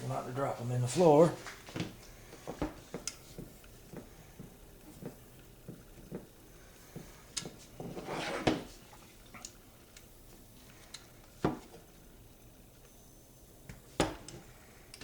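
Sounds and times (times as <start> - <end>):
metal scrape: 7.9 - 8.5.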